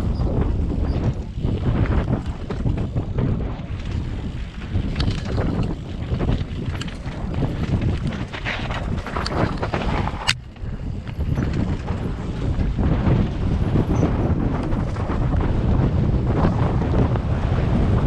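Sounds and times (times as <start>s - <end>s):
bike rattles and knocks: 0.0s - 18.0s
bike tyres rumbling on dirt: 0.0s - 18.0s
wind buffeting microphone: 0.0s - 18.0s.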